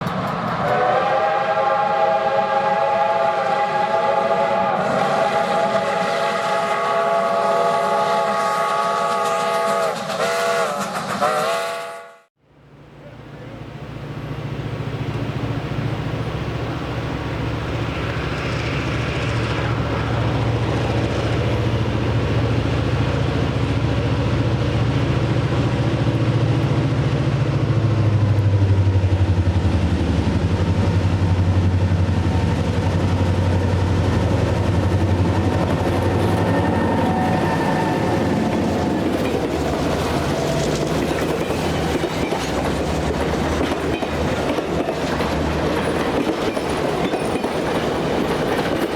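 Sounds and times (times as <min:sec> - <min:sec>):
diesel locomotive engine working: 0:00.0 - 0:48.9.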